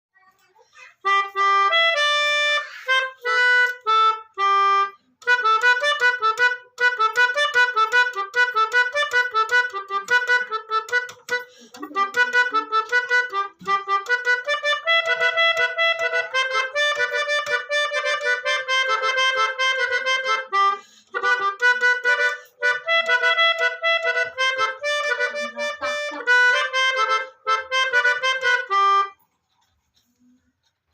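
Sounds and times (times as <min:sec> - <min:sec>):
multi-tone bus horns melody: 0:13.8 - 0:29.1.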